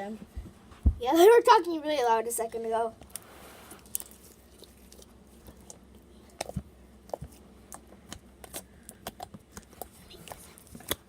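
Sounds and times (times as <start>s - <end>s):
slime squished by fingers: 3.0s - 11.0s.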